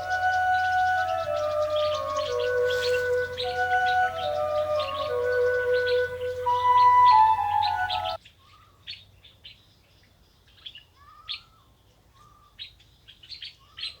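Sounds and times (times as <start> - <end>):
bird chirps and calls: 0.0 - 8.2
music with flute-like tones: 0.0 - 8.2.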